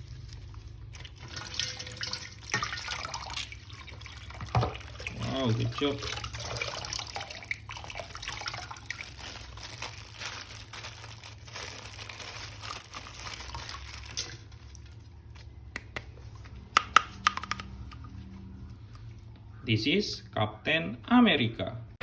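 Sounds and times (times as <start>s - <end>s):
water running and splashing: 0.0s - 15.0s
plastic toy clicking: 16.8s - 18.0s.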